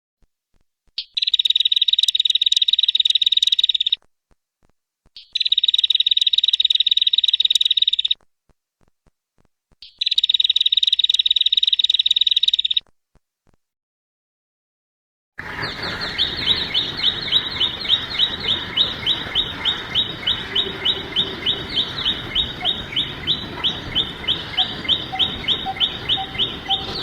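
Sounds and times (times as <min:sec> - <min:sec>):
bird rapid trills: 0:01.0 - 0:04.0, 0:05.2 - 0:08.2, 0:09.8 - 0:12.9, 0:15.4 - 0:27.0.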